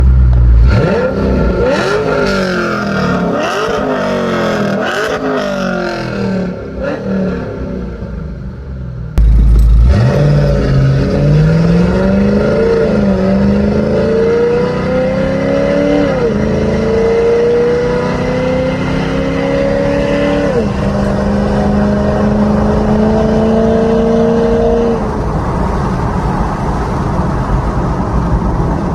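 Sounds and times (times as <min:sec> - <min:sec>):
car engine accelerating: 0:00.0 - 0:28.9.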